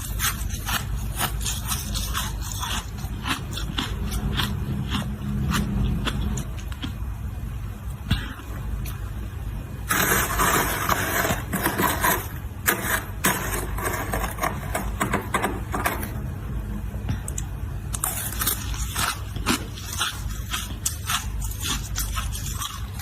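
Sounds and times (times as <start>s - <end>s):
ice crunching while chewed: 0.0s - 7.0s, 17.3s - 23.0s.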